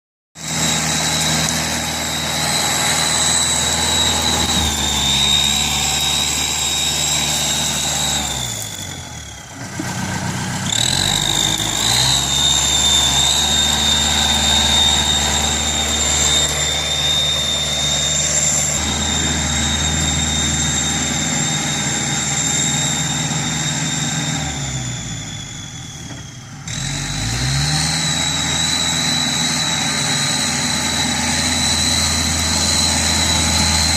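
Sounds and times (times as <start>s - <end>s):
tractor diesel engine running: 0.4s - 33.9s
high steady whine: 11.2s - 26.0s.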